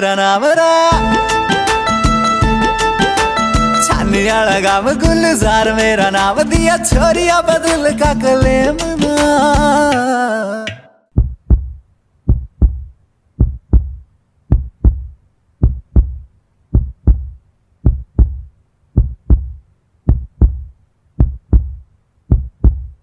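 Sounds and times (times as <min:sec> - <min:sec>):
music with singing: 0:00.0 - 0:11.0
heartbeat-like double thuds: 0:11.1 - 0:23.0.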